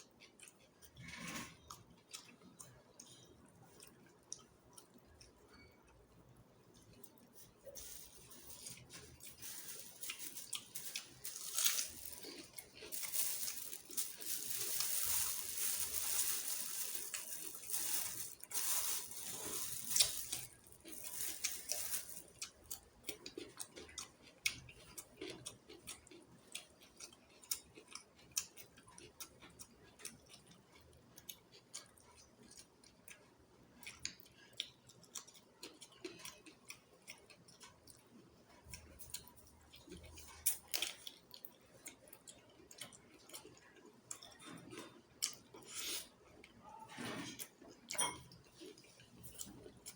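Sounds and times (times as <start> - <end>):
chewing and mouth clicks: 0.1 - 7.3, 22.3 - 46.7
food handling and clicking: 6.7 - 26.2.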